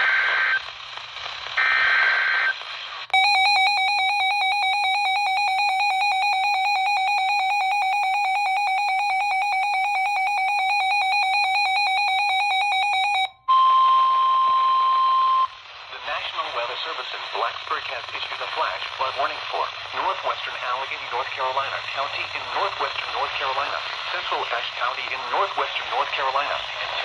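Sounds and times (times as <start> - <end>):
radio alarm beeping rapidly: 3.2 - 15.5
long steady attention tone: 3.2 - 15.6.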